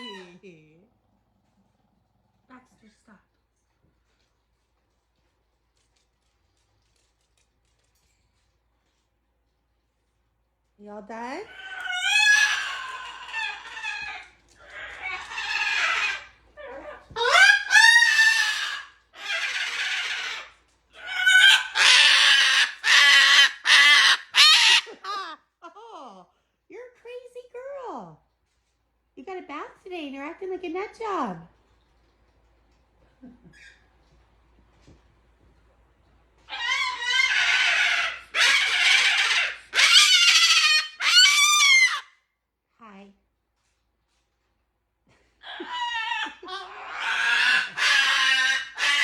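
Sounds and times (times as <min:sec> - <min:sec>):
cockatoo screeching and squawking: 0:00.0 - 0:00.4, 0:11.5 - 0:25.4, 0:36.4 - 0:42.2, 0:45.4 - 0:49.0.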